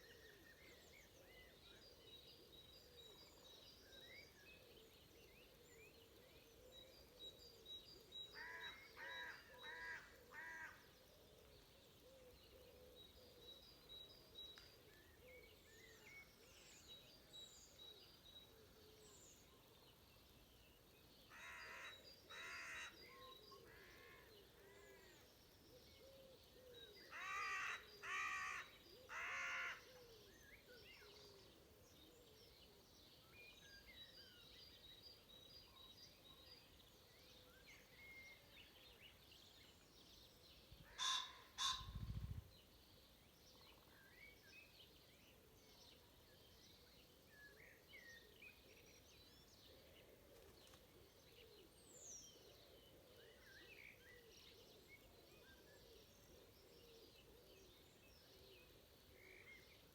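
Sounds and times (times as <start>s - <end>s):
crow cawing: 8.4s - 10.8s, 21.3s - 22.9s, 27.2s - 29.8s, 41.0s - 41.9s.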